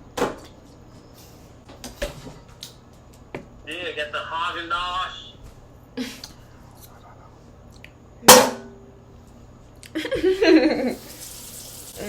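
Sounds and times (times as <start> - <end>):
loud metal clank: 8.3 - 8.9.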